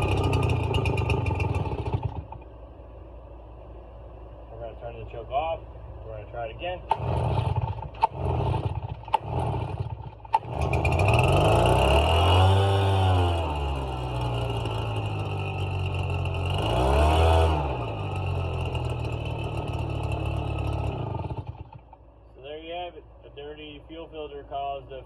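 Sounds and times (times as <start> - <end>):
blower engine revving and idling: 0.0 - 25.0
starter cord pull: 6.9 - 7.2.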